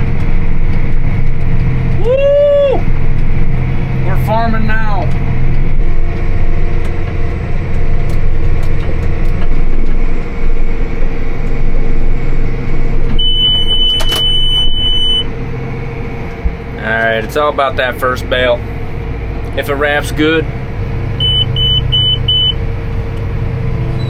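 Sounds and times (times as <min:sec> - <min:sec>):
tractor engine running: 0:00.0 - 0:24.0
high electronic beep: 0:13.2 - 0:15.3, 0:21.2 - 0:22.6.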